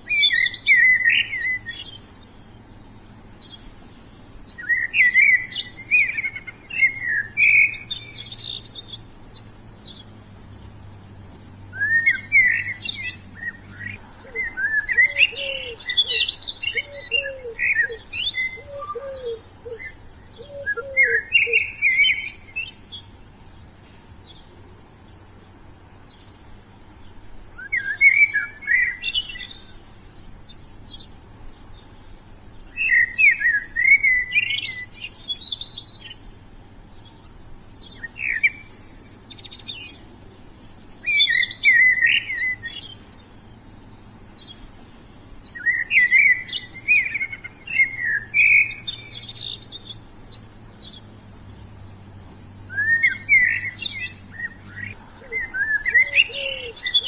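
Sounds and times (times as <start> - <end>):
songbirds chirping: 0.0 - 57.0
low bird call: 11.3 - 25.3, 52.2 - 57.0.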